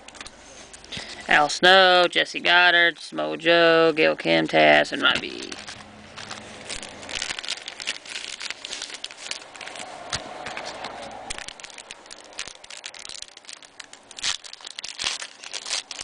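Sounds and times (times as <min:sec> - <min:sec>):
card pack wrappers crinkling: 0:04.6 - 0:16.0.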